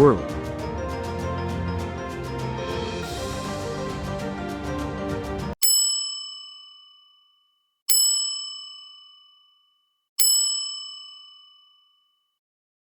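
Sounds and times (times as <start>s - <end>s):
bell-like chime ringing: 5.6s - 12.4s.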